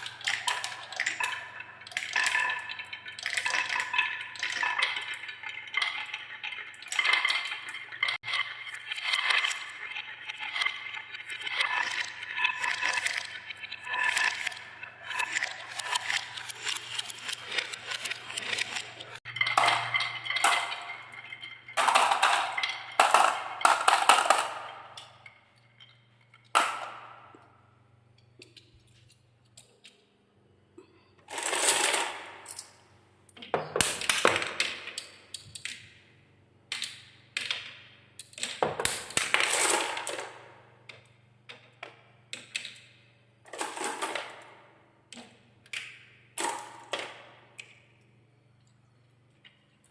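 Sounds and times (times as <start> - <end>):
marbles clattering on wooden tracks: 6.8 - 25.2, 31.3 - 32.8, 36.8 - 42.6, 43.5 - 44.6.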